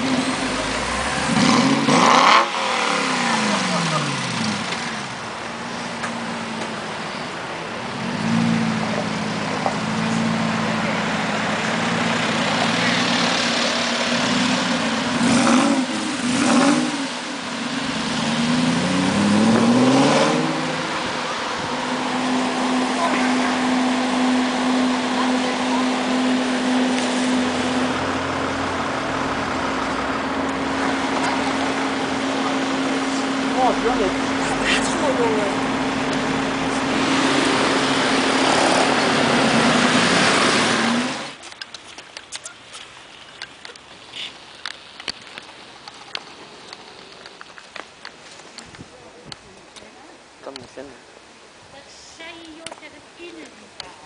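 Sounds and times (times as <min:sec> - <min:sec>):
car engine idling and revving: 0:00.0 - 0:51.7.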